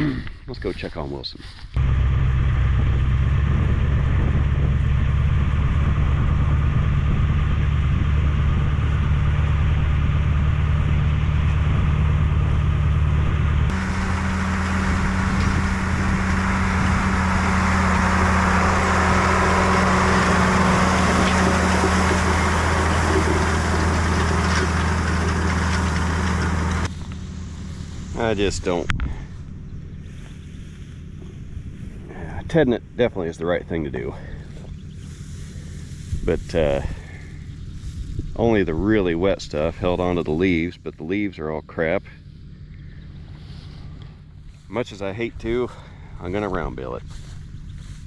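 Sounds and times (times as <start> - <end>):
vehicle engine running: 0.7 - 48.0
road or wind hiss: 13.7 - 28.6.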